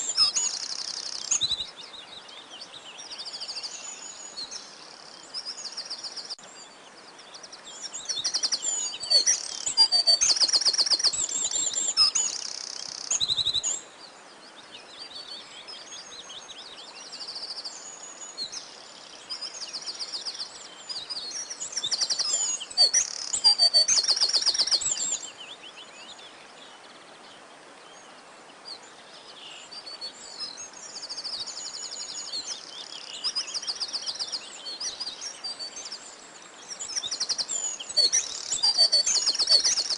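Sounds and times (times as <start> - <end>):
songbirds singing and chirping: 0.0 - 39.9.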